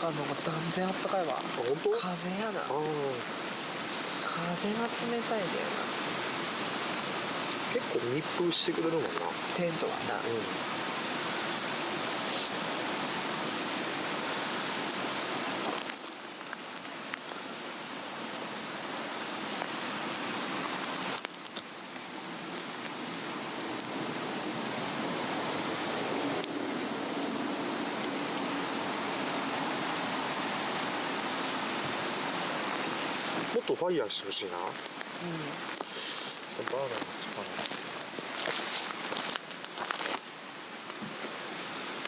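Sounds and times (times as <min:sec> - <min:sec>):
faint fire crackles: 0:00.0 - 0:42.0
fire rushing: 0:00.0 - 0:42.0.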